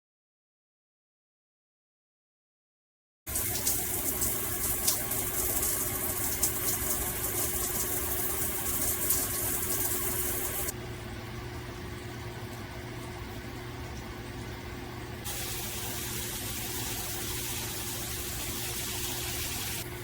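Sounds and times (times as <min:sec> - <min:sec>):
shower head spraying water: 0:03.3 - 0:10.7, 0:15.3 - 0:20.0.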